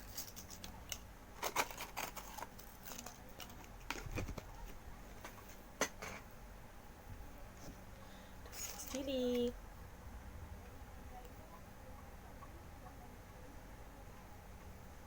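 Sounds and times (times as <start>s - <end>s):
food packaging rustling: 1.4s - 6.3s.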